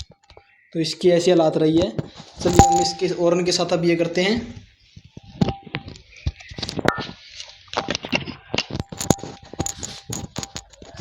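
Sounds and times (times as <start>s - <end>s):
sharp clicks and metallic clinks: 2.5s - 3.1s, 8.9s - 11.0s.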